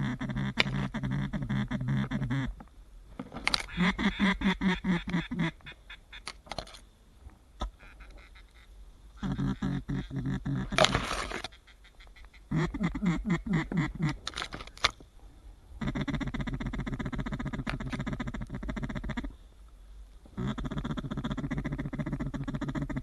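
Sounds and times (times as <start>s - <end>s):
duck quacking: 3.6s - 6.2s, 7.7s - 10.8s.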